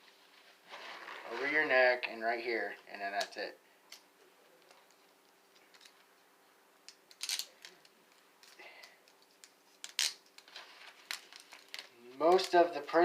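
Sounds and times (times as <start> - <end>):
handcuffs clicking and clinking: 4.6 - 6.1, 6.8 - 10.2.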